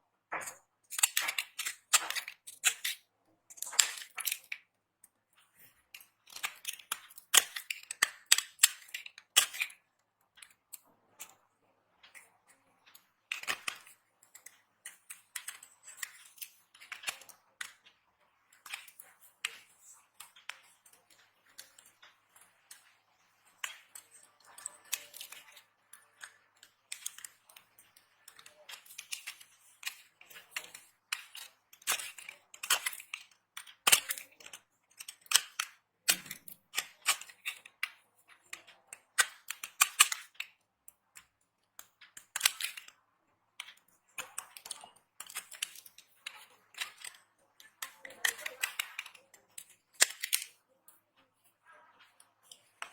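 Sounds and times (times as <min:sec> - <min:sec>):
dry soap cracking and crumbling: 0:00.4 - 0:04.7.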